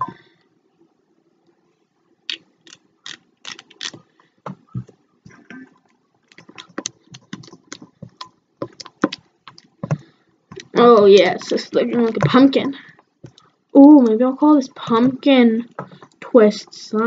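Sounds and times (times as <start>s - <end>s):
slime stirred with spatula: 6.3s - 14.2s.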